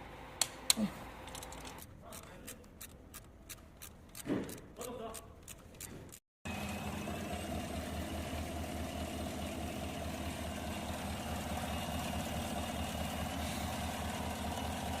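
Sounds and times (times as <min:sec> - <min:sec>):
car engine idling: 0:06.5 - 0:15.0.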